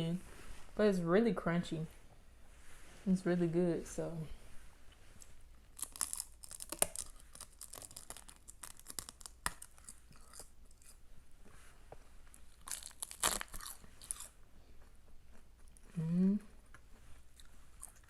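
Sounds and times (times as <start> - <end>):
crisp seaweed snack being chewed: 5.7 - 11.0, 12.3 - 15.9, 16.7 - 18.0.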